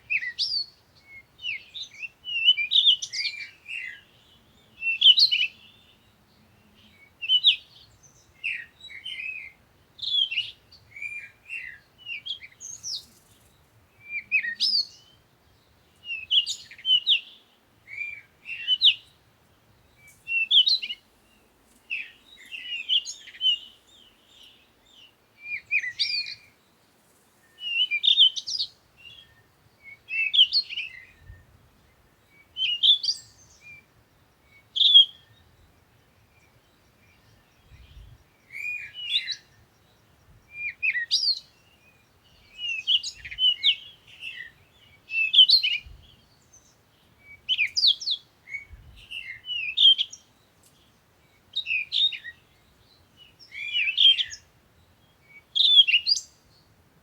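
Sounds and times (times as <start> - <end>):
songbird chirping: 0.0 - 57.0.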